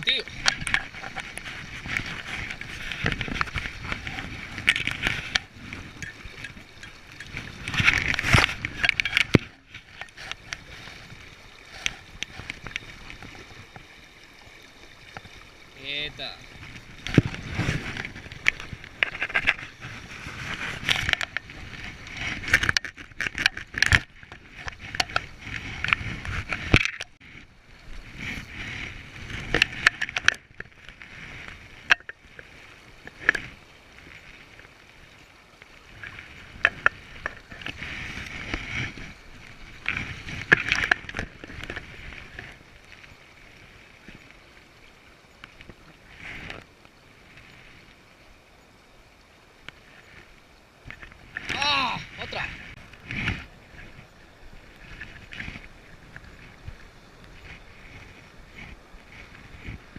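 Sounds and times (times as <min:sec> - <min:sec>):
water splashing and sloshing: 0:00.0 - 0:59.9.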